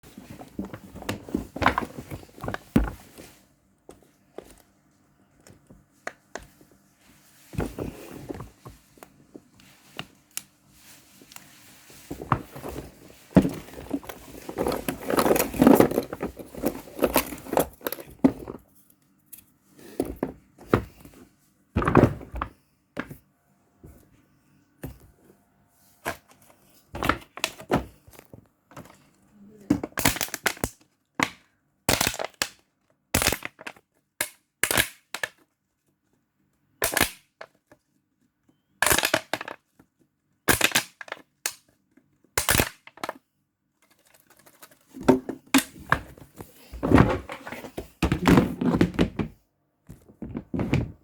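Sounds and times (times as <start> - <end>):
plastic bottle crinkling and rubbing: 10.8 - 18.8.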